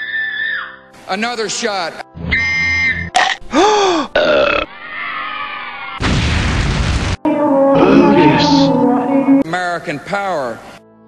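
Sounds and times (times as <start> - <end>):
loud boom or static burst: 6.0 - 7.2
held electric guitar note: 7.3 - 9.5.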